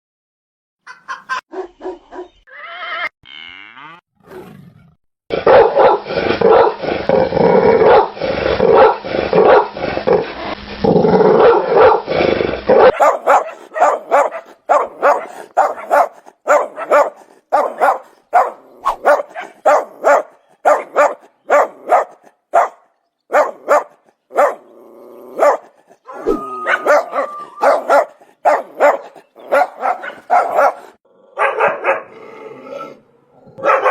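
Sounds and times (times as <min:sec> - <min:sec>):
low drawn-out growl: 0:03.3 - 0:13.0, 0:24.6 - 0:27.6, 0:32.2 - 0:33.6
dogs barking: 0:05.3 - 0:06.8, 0:07.8 - 0:10.3, 0:11.4 - 0:12.1, 0:12.7 - 0:24.7, 0:25.3 - 0:32.2, 0:33.6 - 0:33.9.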